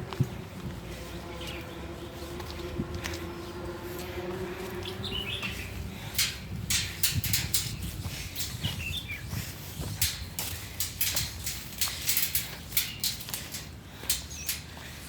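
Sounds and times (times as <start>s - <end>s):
footsteps on a path: 0.0s - 15.0s.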